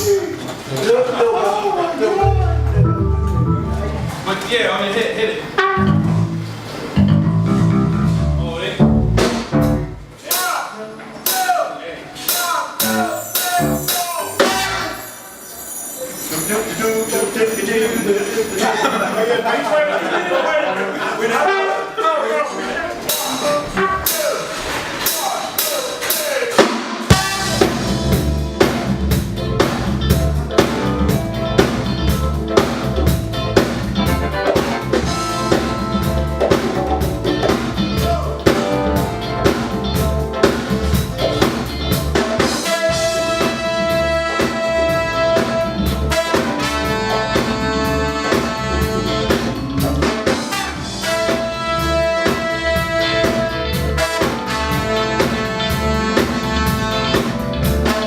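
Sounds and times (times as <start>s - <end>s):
funk band playing: 0.0s - 0.7s, 2.0s - 4.5s, 5.3s - 11.5s, 12.1s - 15.4s, 23.0s - 58.0s
drum kit beat: 2.2s - 4.3s, 5.6s - 15.1s, 23.0s - 58.0s
sustained melody notes: 2.2s - 4.3s, 5.6s - 10.1s, 12.8s - 15.4s, 27.1s - 42.2s.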